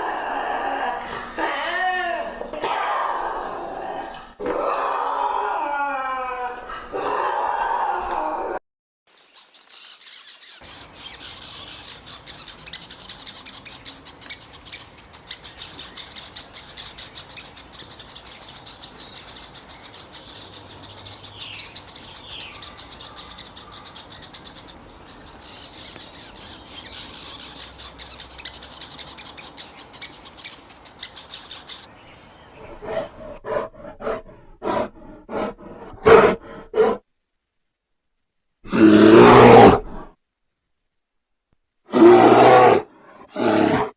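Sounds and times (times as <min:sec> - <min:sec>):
dense high chirping: 0:09.1 - 0:37.0.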